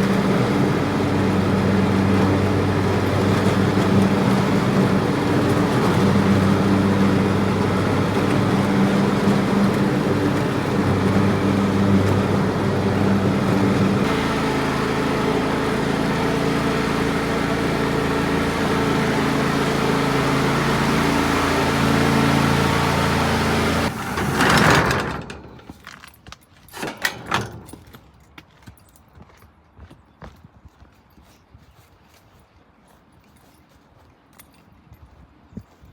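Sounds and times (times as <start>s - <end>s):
vehicle engine running: 0.0s - 25.7s.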